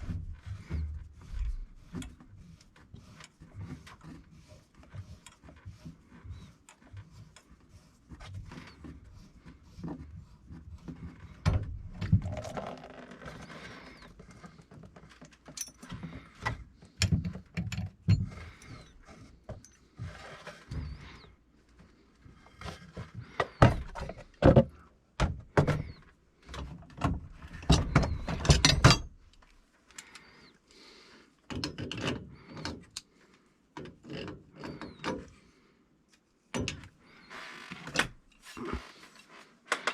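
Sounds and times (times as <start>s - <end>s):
tools and metal parts clanking: 15.2s - 18.9s, 27.0s - 29.2s.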